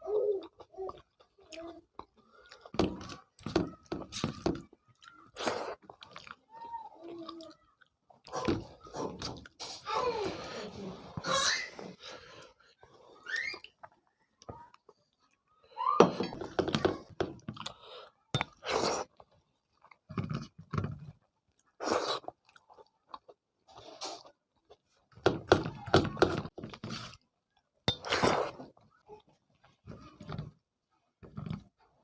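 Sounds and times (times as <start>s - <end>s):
person chewing food: 0.3s - 6.5s, 16.3s - 25.3s.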